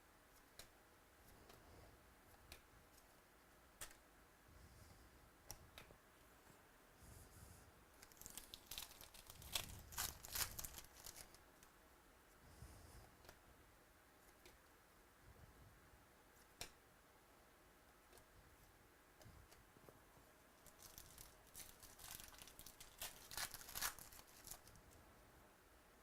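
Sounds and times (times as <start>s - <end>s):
wrapper tearing and crinkling: 8.0s - 11.4s, 20.6s - 24.8s.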